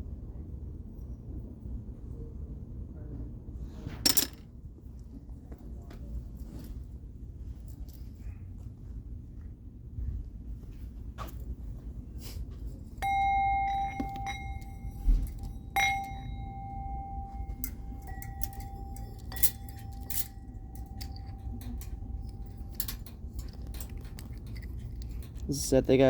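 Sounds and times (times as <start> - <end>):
hard object struck ringing: 13.0 - 24.6
light clinks and taps: 13.0 - 25.7.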